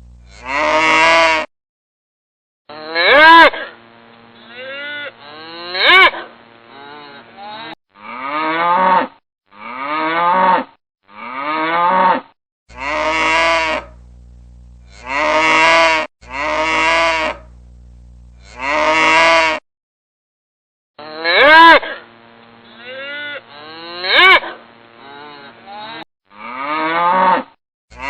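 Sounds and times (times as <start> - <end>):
steady low hum: 0.0 - 0.8, 12.7 - 15.4, 16.2 - 18.9
cow mooing: 0.2 - 1.5, 2.7 - 3.7, 4.4 - 14.0, 14.8 - 17.5, 18.4 - 19.6, 21.0 - 22.0, 22.7 - 28.0.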